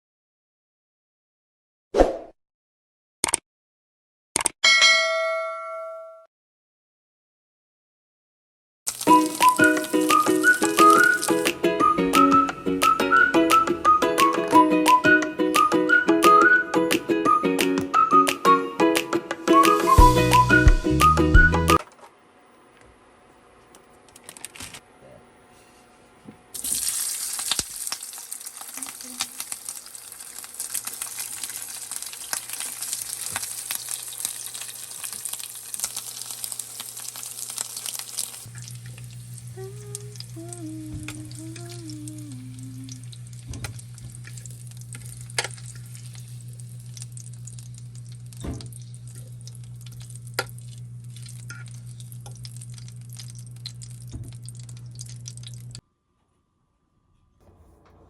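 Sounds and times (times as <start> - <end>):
food sizzling in a pan: 8.9 - 11.5, 26.6 - 55.8
low hum: 38.5 - 55.8.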